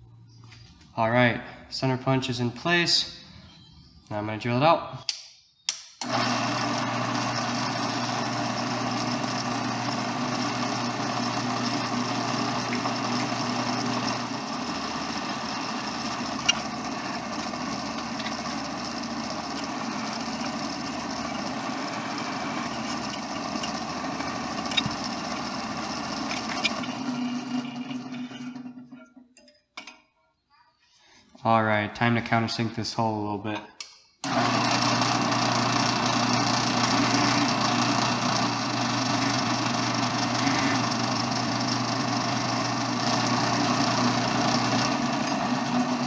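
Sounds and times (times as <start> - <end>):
electric drill drilling steel: 6.0 - 28.9, 34.2 - 46.0.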